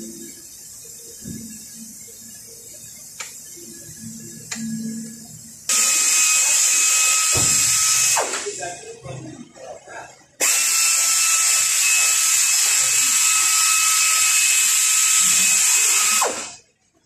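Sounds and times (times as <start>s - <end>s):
high-speed power tool whine: 5.7s - 8.6s, 10.4s - 16.6s.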